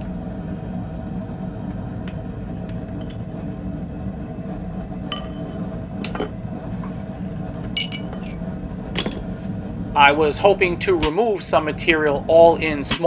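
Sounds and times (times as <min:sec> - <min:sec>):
steady low hum: 0:00.0 - 0:13.0
metallic tool clinks: 0:07.8 - 0:08.4.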